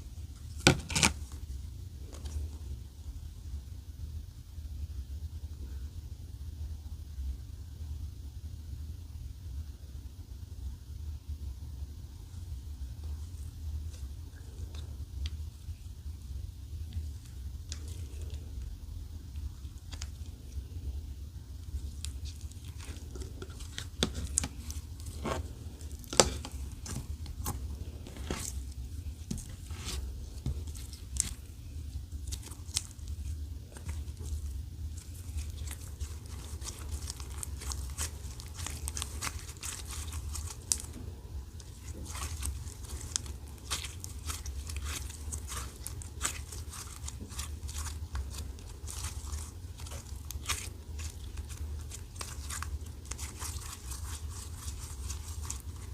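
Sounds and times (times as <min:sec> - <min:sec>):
low steady hum: 0:00.0 - 0:55.9
slime squishing: 0:12.7 - 0:55.9.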